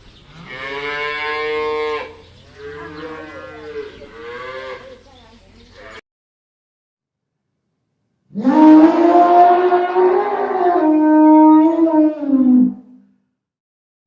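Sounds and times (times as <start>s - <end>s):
cow mooing: 0.4s - 4.9s, 8.3s - 12.8s.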